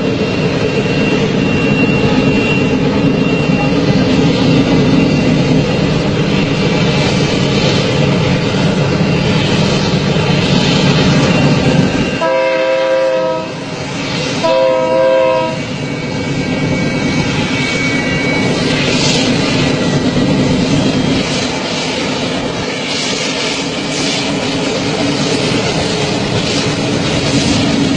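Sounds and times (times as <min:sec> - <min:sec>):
train rumbling: 0:00.0 - 0:27.9
train horn blasts: 0:12.2 - 0:13.8, 0:14.4 - 0:15.7.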